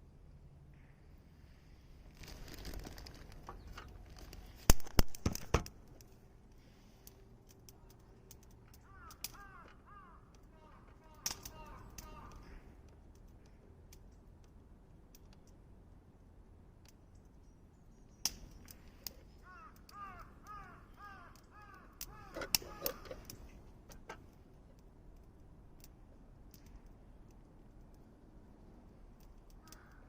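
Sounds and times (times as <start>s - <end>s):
campfire crackling and popping: 2.0s - 17.4s, 18.2s - 30.0s
crow cawing: 8.8s - 12.6s, 19.4s - 23.4s, 29.6s - 30.0s.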